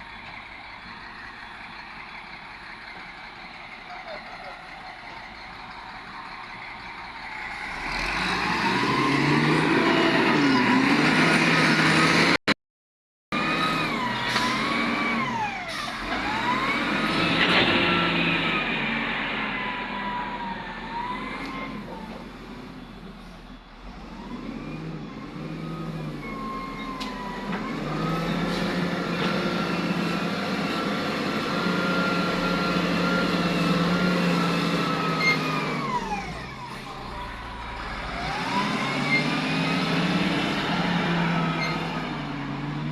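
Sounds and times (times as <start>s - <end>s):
diesel machinery engine: 0.0s - 12.4s, 13.3s - 42.9s.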